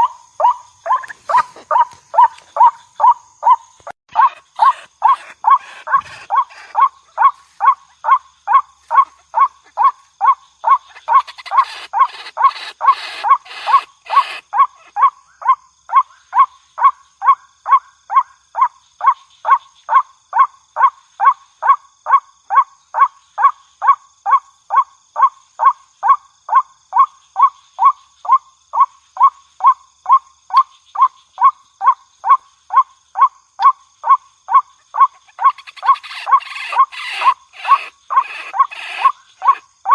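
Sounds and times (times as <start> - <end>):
waterhen call notes: 0.0 - 9.9, 10.7 - 14.9, 34.5 - 39.9.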